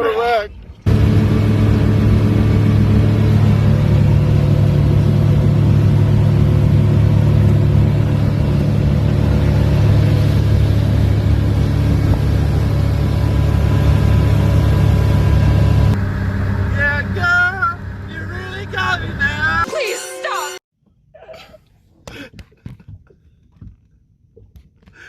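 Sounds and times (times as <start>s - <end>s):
motorboat engine drone: 0.6s - 19.6s.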